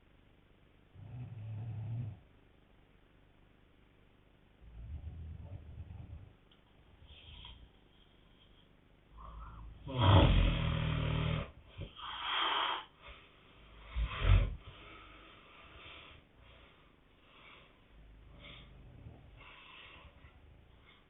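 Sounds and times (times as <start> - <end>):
loud low snoring: 1.0 - 2.2, 4.6 - 6.3, 9.2 - 12.9, 13.8 - 14.7, 18.0 - 20.9
breathy hiss: 4.6 - 21.0
loud snort: 9.3 - 12.9, 13.9 - 14.7.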